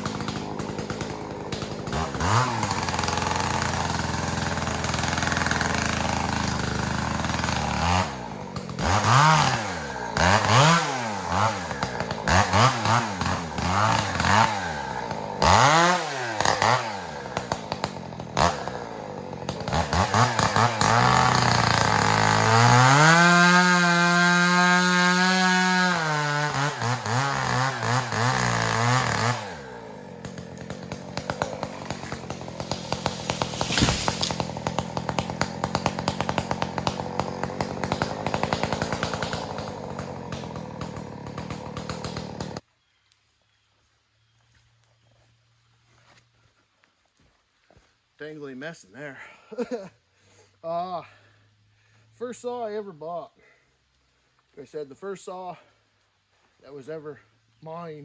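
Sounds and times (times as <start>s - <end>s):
chainsaw idling and revving: 0.0s - 42.7s.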